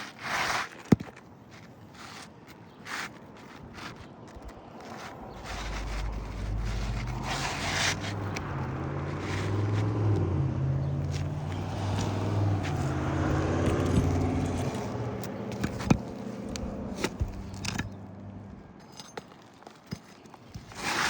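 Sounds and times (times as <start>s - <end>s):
sharp clicks and scrapes: 0.0s - 21.0s
engine humming: 5.0s - 18.8s.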